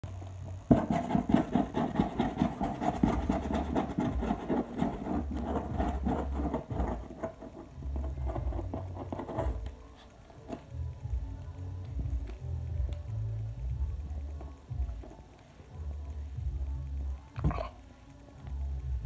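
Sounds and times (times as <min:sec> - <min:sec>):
scratching on a box: 0:00.7 - 0:10.7.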